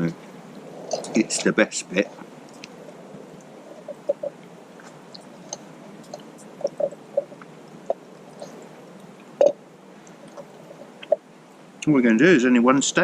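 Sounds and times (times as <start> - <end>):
man chewing with wet smacks: 2.2 - 2.8, 3.4 - 11.2.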